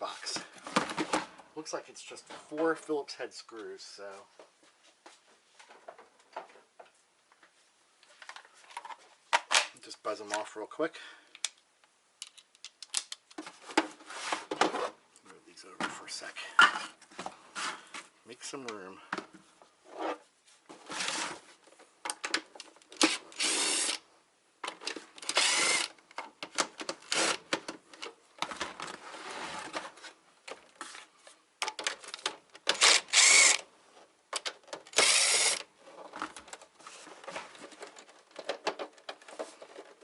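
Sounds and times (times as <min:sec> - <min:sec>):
cordless power screwdriver running: 0:23.4 - 0:24.0, 0:25.3 - 0:25.9, 0:32.8 - 0:33.6, 0:34.9 - 0:35.6.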